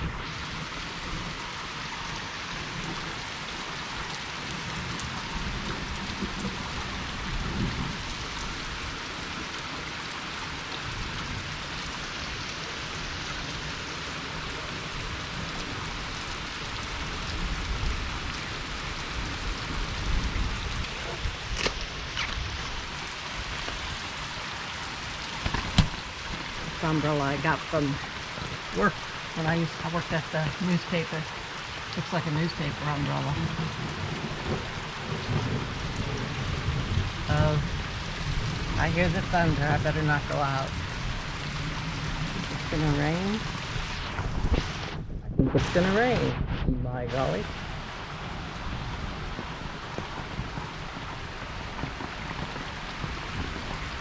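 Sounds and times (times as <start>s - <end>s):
rain pattering: 0.0s - 54.0s
low rumbles: 15.8s - 54.0s.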